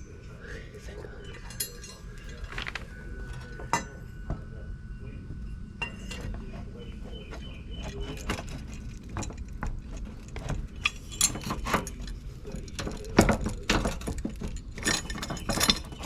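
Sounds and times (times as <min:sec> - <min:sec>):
metallic clinks of hand tools: 0:01.2 - 0:04.0, 0:10.2 - 0:16.0.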